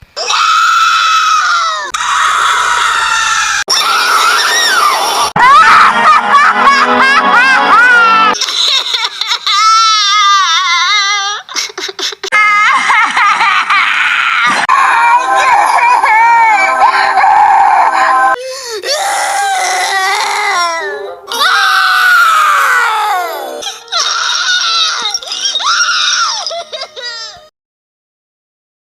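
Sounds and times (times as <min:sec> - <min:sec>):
woman screaming high-pitched: 0:14.7 - 0:18.3, 0:18.9 - 0:27.4.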